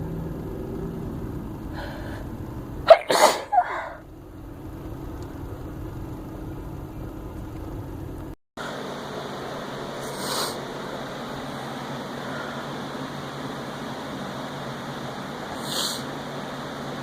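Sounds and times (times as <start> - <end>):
woman sneezing: 2.9 - 4.0.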